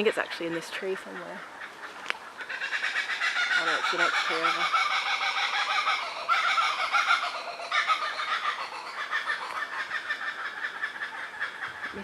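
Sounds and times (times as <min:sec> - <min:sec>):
kookaburras laughing: 0:02.4 - 0:12.0.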